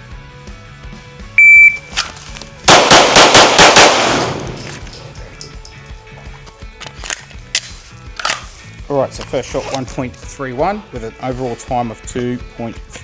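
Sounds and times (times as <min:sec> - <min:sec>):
shot timer beep: 0:01.4 - 0:01.9
pistol shots with echoes: 0:02.6 - 0:05.4.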